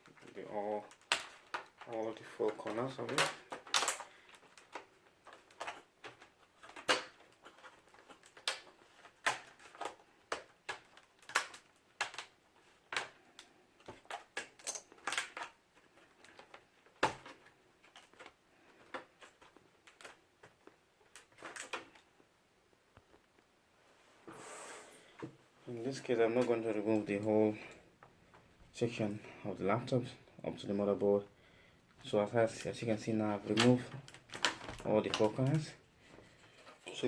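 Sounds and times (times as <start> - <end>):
plastic clips clicking and snapping: 0.0 - 15.6, 33.4 - 35.6.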